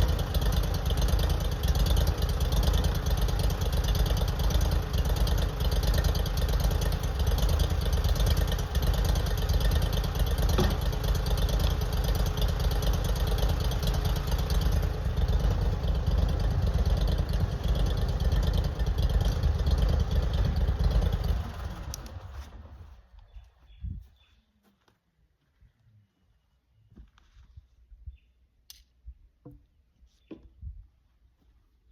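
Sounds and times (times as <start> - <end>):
small engine running: 0.0 - 23.0.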